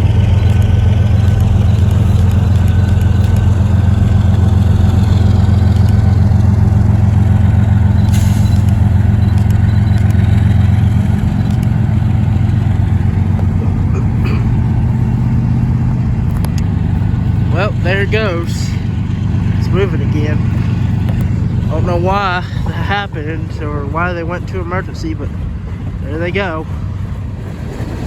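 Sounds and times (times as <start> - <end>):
diesel locomotive drone: 0.0 - 28.0
short hiss: 8.1 - 8.7.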